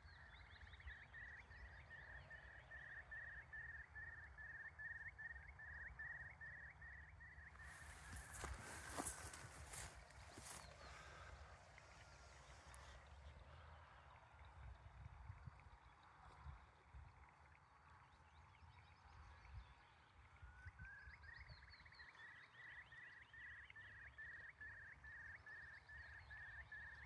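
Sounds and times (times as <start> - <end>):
curlew calling faintly: 7.5 - 11.3.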